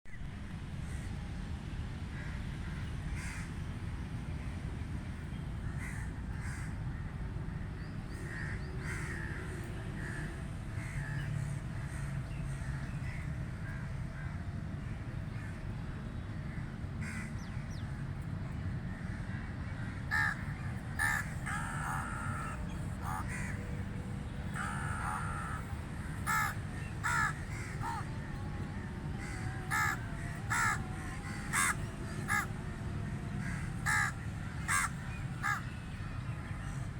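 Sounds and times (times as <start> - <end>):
low background rumble: 0.1 - 36.9
crows cawing: 2.2 - 3.5, 5.8 - 7.0, 8.2 - 9.4, 17.0 - 17.4, 18.9 - 23.6, 24.5 - 28.2, 29.1 - 32.6, 33.4 - 35.7.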